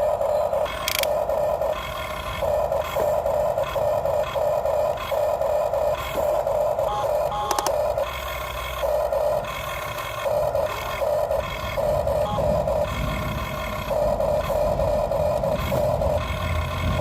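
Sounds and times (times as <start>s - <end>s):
electric gear motors whining: 0.0s - 17.0s
clicks: 0.5s - 3.1s, 5.9s - 11.5s.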